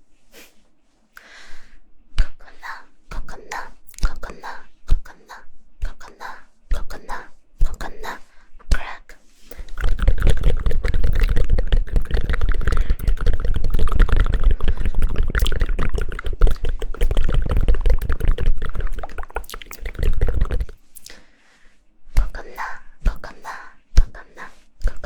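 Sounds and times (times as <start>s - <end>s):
fast hand claps and pats: 9.9s - 20.8s.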